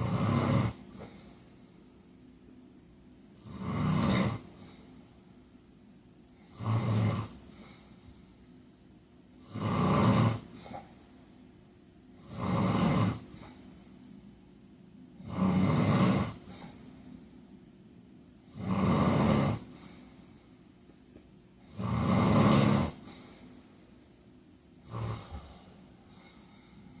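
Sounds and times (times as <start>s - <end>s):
man snoring: 0.0s - 1.3s, 3.4s - 4.8s, 6.4s - 7.8s, 9.4s - 10.9s, 12.2s - 13.6s, 15.2s - 16.8s, 18.5s - 20.0s, 21.6s - 23.3s, 24.8s - 26.4s.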